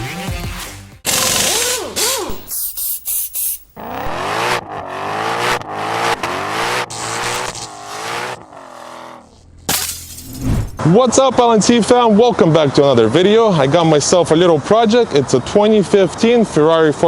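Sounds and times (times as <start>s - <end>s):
car engine revving: 1.1s - 2.5s, 3.7s - 10.8s.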